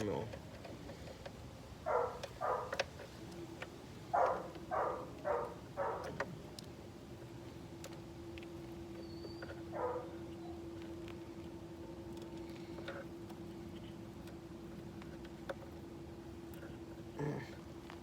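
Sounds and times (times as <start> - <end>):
faint steady hum: 0.0 - 18.0
dog barking: 1.8 - 2.8, 4.1 - 6.2, 9.7 - 10.2.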